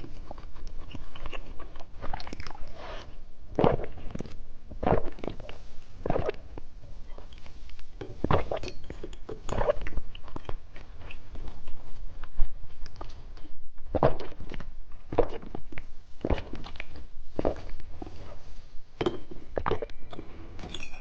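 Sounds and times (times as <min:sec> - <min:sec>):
soft mouth sounds: 0:00.0 - 0:11.4, 0:12.2 - 0:18.4, 0:19.3 - 0:20.5
candy crunching while chewing: 0:00.8 - 0:02.8.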